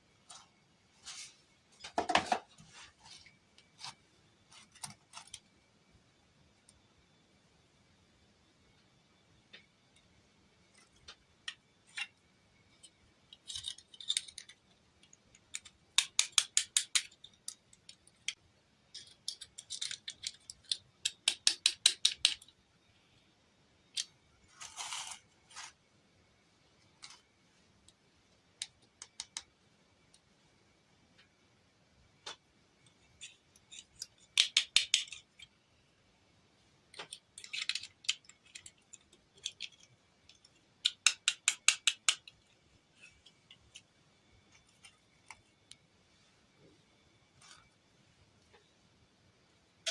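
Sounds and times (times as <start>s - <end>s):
small hard objects clicking: 12.8s - 22.6s, 32.2s - 35.6s, 36.9s - 43.9s.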